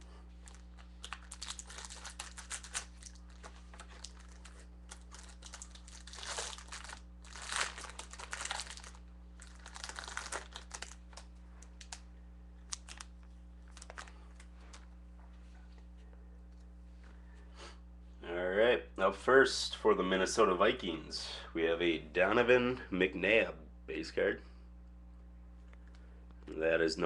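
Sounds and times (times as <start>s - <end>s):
wrapper crinkling and tearing: 0.4s - 14.9s.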